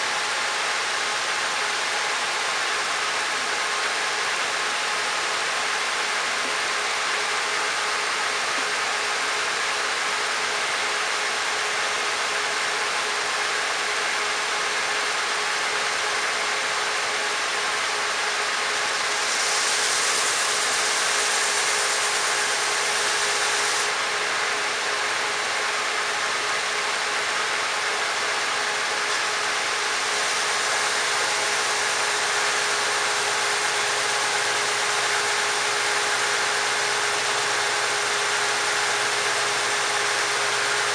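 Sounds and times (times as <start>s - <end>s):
grinder motor hum: 17.0s - 40.9s
steel hissing against abrasive: 19.0s - 23.9s.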